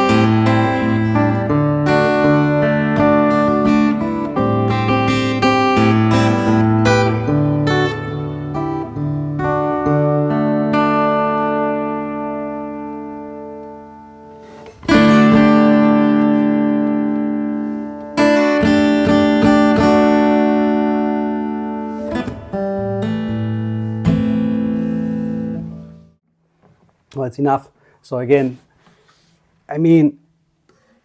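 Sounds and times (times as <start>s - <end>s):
acoustic guitar chords ringing: 0.0s - 26.2s
picked guitar notes: 0.0s - 26.2s.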